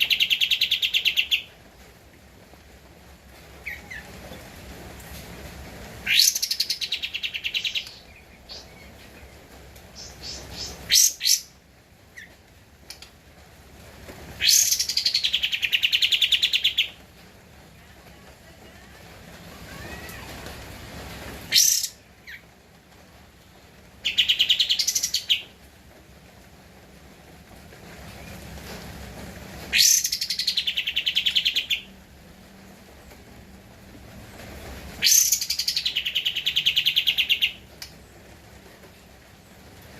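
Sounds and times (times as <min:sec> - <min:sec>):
bird singing trilling phrases: 0:06.1 - 0:11.6, 0:14.4 - 0:17.0, 0:24.1 - 0:25.5, 0:29.7 - 0:31.9, 0:35.0 - 0:37.6.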